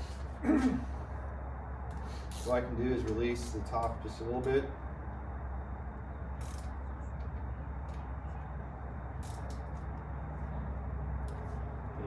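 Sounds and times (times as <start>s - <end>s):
steady low hum: 0.0s - 12.0s
wrench clicking on bolts: 6.4s - 6.8s, 9.2s - 9.8s.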